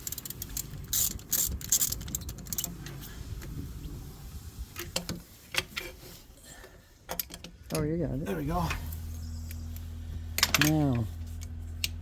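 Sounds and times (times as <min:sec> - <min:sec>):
tools and metal parts clinking: 0:00.0 - 0:03.1, 0:07.1 - 0:07.9, 0:08.9 - 0:12.0.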